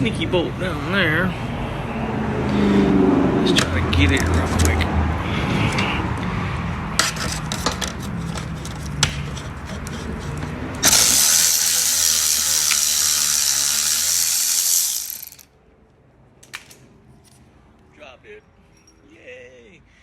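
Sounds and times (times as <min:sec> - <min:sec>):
pneumatic tool hissing air: 0:10.8 - 0:15.4.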